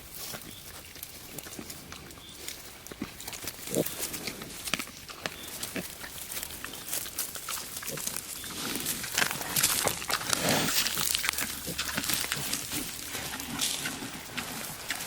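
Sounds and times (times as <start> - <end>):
small crackles and clicks: 1.0 - 13.0
wild boars grunting: 1.3 - 15.0.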